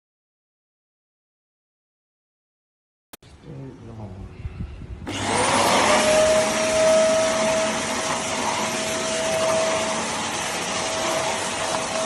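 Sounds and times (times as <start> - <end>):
vacuum cleaner running: 5.1 - 12.0.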